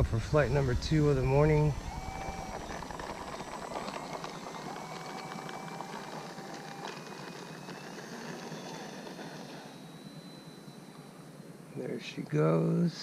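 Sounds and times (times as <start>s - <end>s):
electric motor whine: 0.0s - 13.0s.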